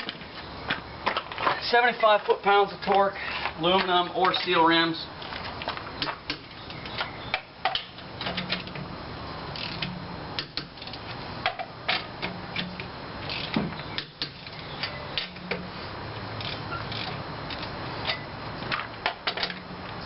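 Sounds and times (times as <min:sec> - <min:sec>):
torque wrench ratcheting and clicking: 0:09.5 - 0:09.9, 0:16.4 - 0:17.7.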